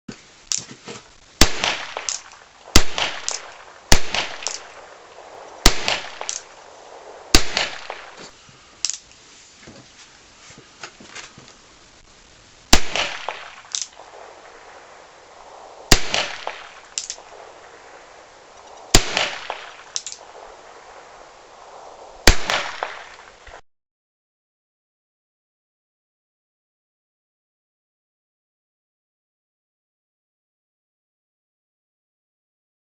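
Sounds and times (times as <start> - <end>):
fainter crack: 0.5 - 9.8, 12.7 - 21.2
revolver shots: 1.4 - 8.3, 15.8 - 18.0, 18.8 - 20.3, 22.2 - 23.3.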